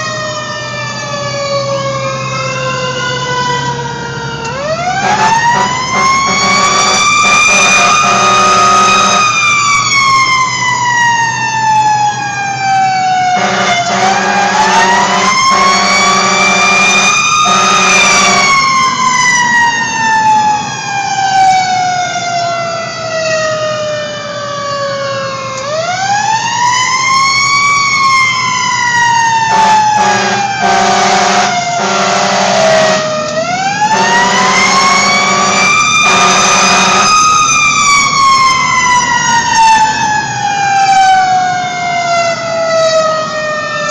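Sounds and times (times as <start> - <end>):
fire engine siren wailing: 0.0 - 43.9
fire engine horn blasts: 4.4 - 10.0, 12.9 - 19.6, 28.8 - 39.9.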